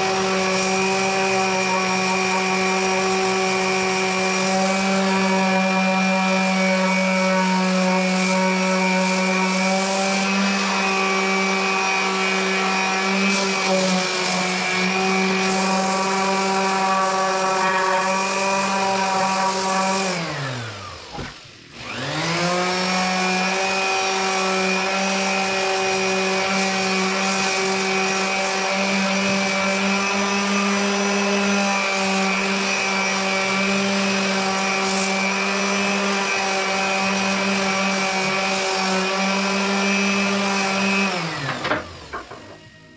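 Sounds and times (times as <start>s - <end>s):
electric sander motor whine: 0.0s - 42.9s.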